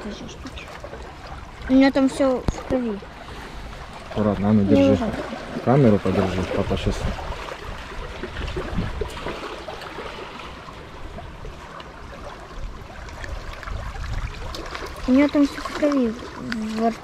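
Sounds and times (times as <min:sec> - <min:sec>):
wind buffeting microphone: 0:00.0 - 0:10.2, 0:12.2 - 0:17.0.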